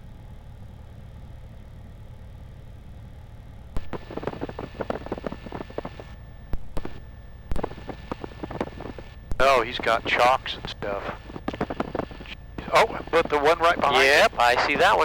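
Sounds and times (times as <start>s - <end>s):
airplane engine droning: 0.0s - 15.0s.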